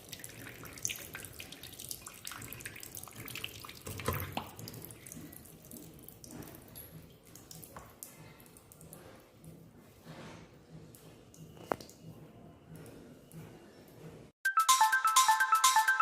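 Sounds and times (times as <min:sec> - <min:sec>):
water splashing and dripping in sink: 0:00.0 - 0:09.4.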